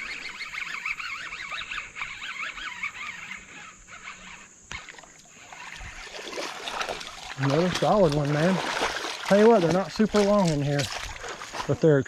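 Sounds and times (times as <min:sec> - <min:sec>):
high warbling animal call: 0:00.0 - 0:06.2
high insect hiss: 0:00.0 - 0:12.0.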